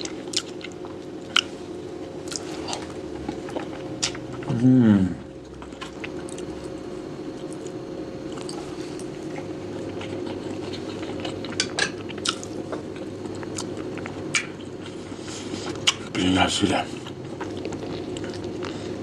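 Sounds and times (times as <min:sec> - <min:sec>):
person chewing food: 0:00.0 - 0:01.6, 0:02.2 - 0:04.6, 0:05.3 - 0:16.1, 0:16.9 - 0:19.0
steady low hum: 0:00.0 - 0:19.0.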